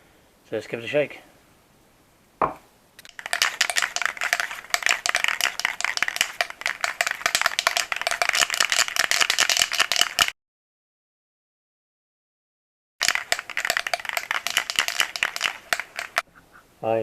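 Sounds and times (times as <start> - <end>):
spray can rattling while shaken: 3.0 - 10.4, 13.0 - 16.3.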